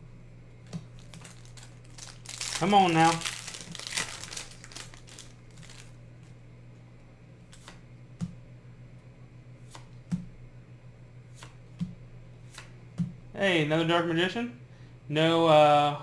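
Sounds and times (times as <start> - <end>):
faint steady hum: 0.0 - 16.0
cards clicking as flipped: 7.5 - 8.4, 12.5 - 12.7.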